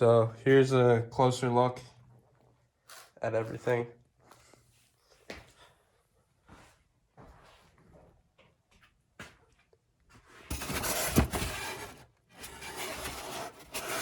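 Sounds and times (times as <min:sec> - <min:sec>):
handling rubbing and rustling: 0:10.2 - 0:14.0.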